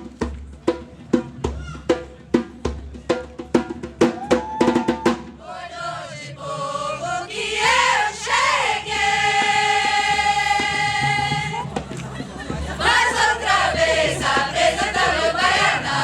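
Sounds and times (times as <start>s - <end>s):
samba drum strokes: 0.0s - 16.0s
group singing together: 5.3s - 16.0s.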